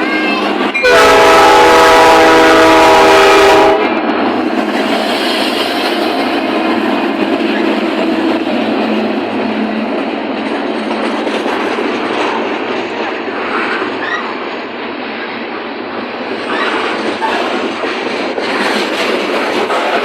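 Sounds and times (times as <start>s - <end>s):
train wheels rumbling on rails: 0.0s - 20.0s
locomotive air horn: 0.8s - 3.9s.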